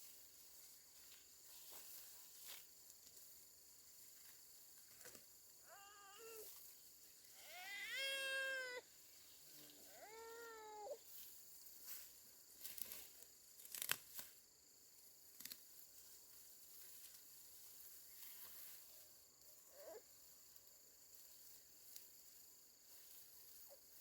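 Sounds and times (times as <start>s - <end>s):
high-pitched animal calls: 5.7s - 6.5s.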